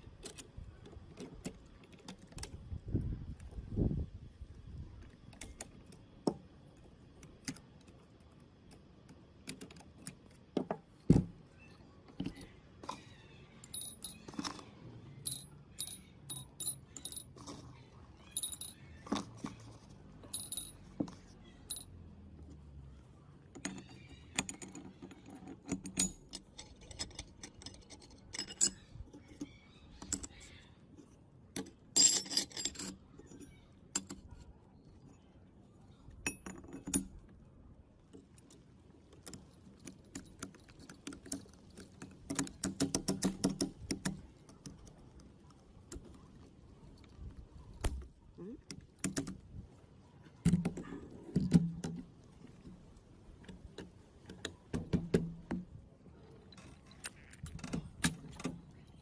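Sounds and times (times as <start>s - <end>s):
small metal parts clinking: 11.5s - 22.1s, 23.4s - 30.6s, 31.5s - 34.4s, 35.9s - 37.3s, 38.1s - 47.9s, 56.4s - 59.0s.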